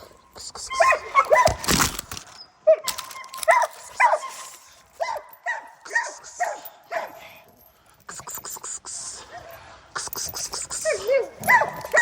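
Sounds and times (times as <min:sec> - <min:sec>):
dog barking: 0:00.7 - 0:01.6, 0:02.7 - 0:07.2, 0:10.8 - 0:12.0.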